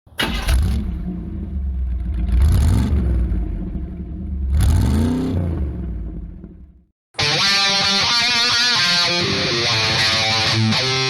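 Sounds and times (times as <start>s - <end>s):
vehicle engine revving: 0.1s - 6.9s.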